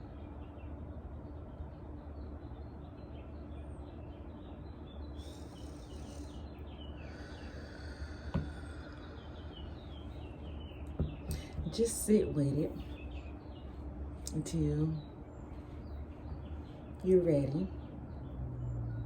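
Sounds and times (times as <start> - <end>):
faint low hum: 0.0 - 19.0
small birds chirping: 0.0 - 19.0
insect buzz: 5.2 - 10.2.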